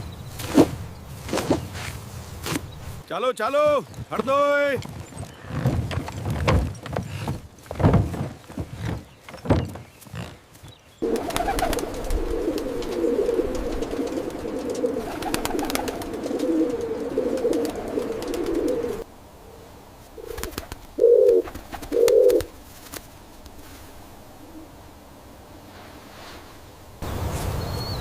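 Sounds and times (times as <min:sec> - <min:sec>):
pigeons cooing: 0:11.0 - 0:19.0, 0:20.2 - 0:22.5.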